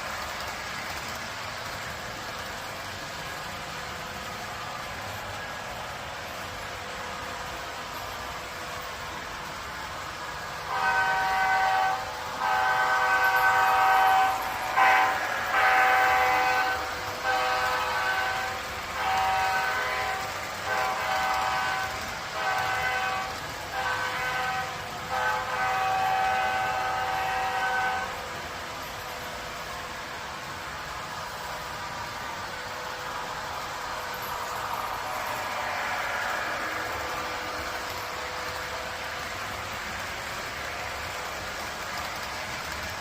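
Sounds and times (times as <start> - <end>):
train horn blasts: 10.5 - 29.0.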